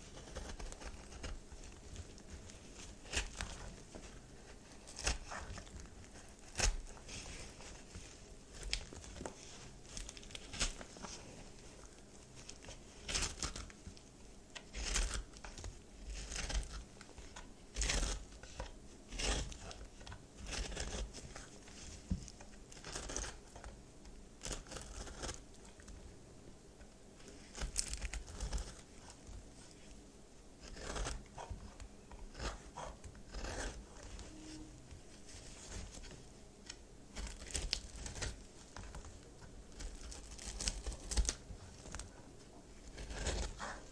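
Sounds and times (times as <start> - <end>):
soap crunching and crumbling: 0.0 - 23.6, 24.4 - 26.0, 27.2 - 30.0, 30.6 - 31.3, 32.3 - 33.8, 37.2 - 42.1, 42.8 - 43.9.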